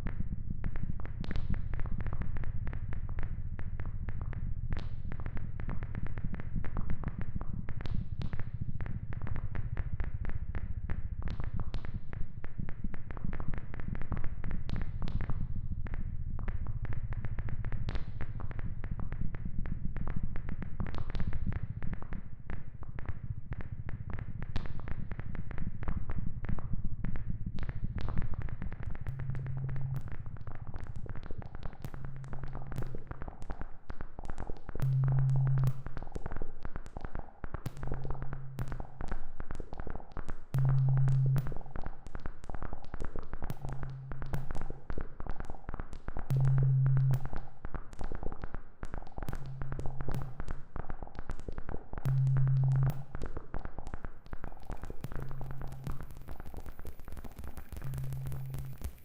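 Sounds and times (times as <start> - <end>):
dense crackling clicks: 0.1 - 59.0
low pulsing synth tone: 29.0 - 31.1, 31.8 - 33.1, 34.8 - 35.9, 40.6 - 41.6, 46.3 - 47.4, 49.3 - 50.5, 52.0 - 53.4, 54.4 - 59.0.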